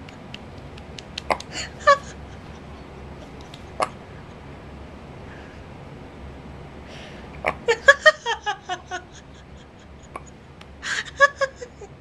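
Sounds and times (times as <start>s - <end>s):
person laughing: 1.3s - 3.8s, 7.6s - 12.0s.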